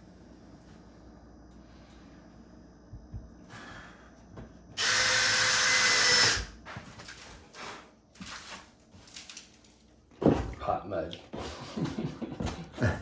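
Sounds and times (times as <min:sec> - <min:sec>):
power drill running: 0:04.8 - 0:06.5.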